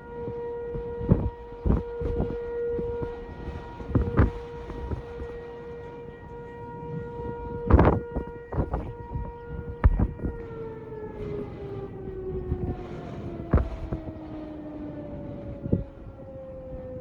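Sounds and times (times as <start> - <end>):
tornado warning siren: 0.0 - 17.0
sharp thumps: 0.8 - 5.4, 7.5 - 10.7, 13.4 - 14.2.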